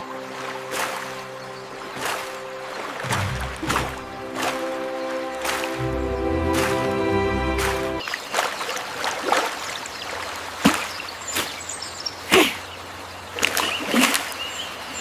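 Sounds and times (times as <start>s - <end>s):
background music: 0.0s - 8.0s.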